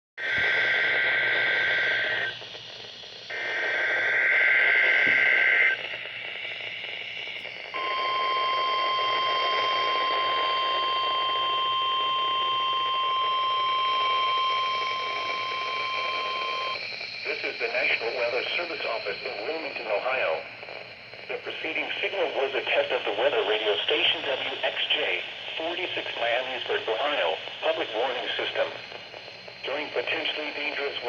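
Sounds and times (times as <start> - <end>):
steady warning alarm tone: 0.2 - 2.4, 3.3 - 22.2
radio static: 0.2 - 31.0.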